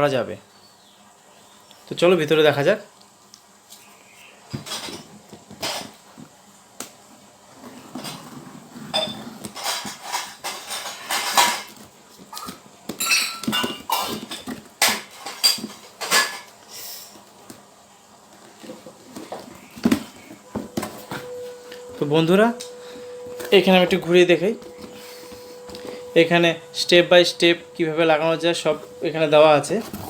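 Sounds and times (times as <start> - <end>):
contents knocking and clattering: 4.6 - 6.0, 8.9 - 16.6
packaging rustling: 18.3 - 26.4, 28.5 - 30.0.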